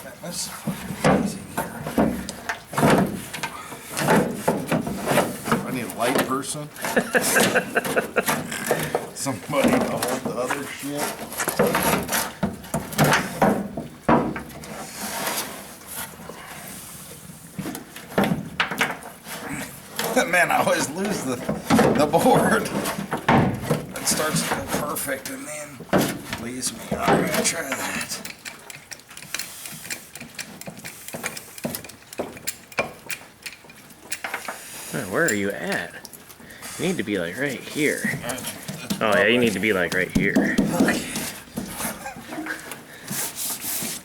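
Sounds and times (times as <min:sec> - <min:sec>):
wooden board scraping steel panel: 0:09.7 - 0:13.6
tools and wooden board clicking: 0:28.1 - 0:34.6.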